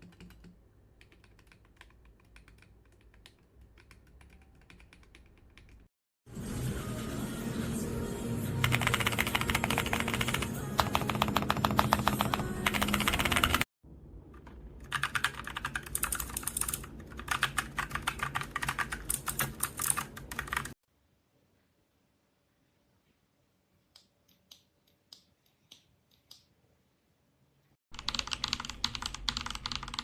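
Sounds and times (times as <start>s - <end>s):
mechanical keyboard typing: 0.0s - 5.9s, 8.6s - 13.7s, 14.3s - 20.8s, 27.9s - 30.0s.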